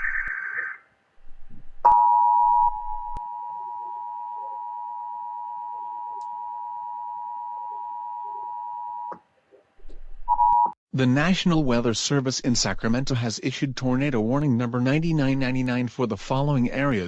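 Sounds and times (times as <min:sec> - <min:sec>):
warbling data tones: 0:00.0 - 0:00.8.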